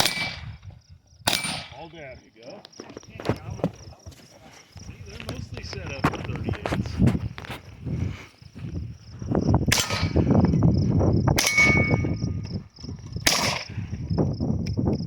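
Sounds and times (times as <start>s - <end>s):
gunshots: 0.0s - 0.6s, 1.2s - 2.0s, 9.6s - 10.3s, 11.4s - 12.0s, 13.2s - 13.8s
steel target clanging: 1.3s - 1.8s, 9.7s - 10.2s, 11.4s - 12.2s.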